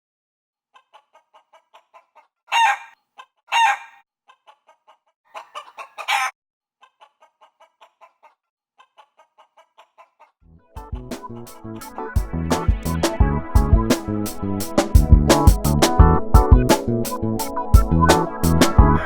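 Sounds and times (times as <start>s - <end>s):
chicken clucking: 0.7s - 12.7s
chicken loud calls: 0.8s - 10.3s.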